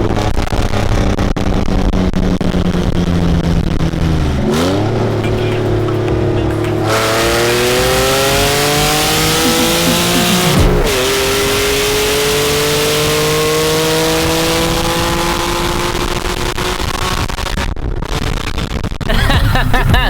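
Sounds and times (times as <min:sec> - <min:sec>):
truck engine accelerating: 0:00.8 - 0:16.7.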